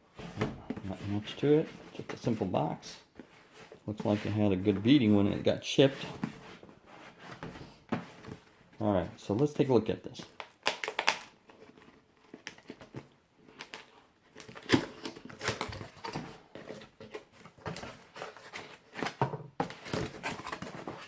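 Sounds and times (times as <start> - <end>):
cardboard rustling and scraping: 0.1 - 9.1, 15.2 - 21.0.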